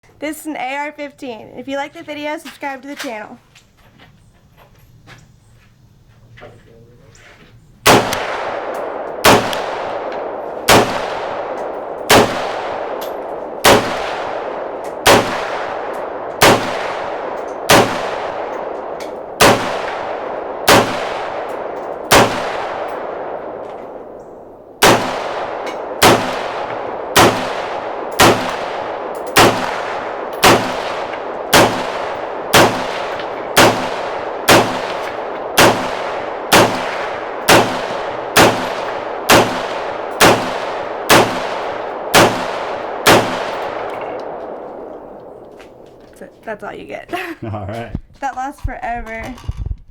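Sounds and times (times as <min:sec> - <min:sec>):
rifle shots echoing: 0:07.8 - 0:46.0.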